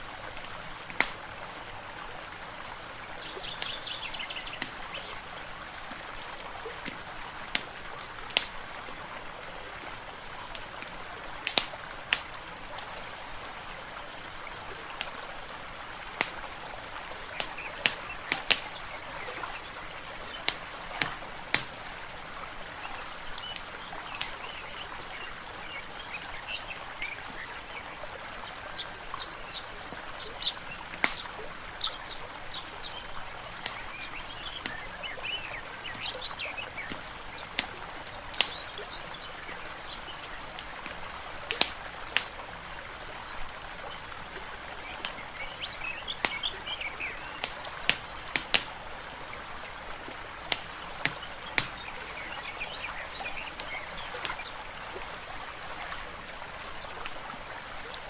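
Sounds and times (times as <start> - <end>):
small birds chirping: 2.8 - 5.5, 15.8 - 48.9, 50.3 - 58.0
water hissing: 15.6 - 26.6, 50.4 - 57.4
wood fire crackling and popping: 16.1 - 16.4, 17.4 - 21.9, 47.4 - 48.7, 50.5 - 51.8.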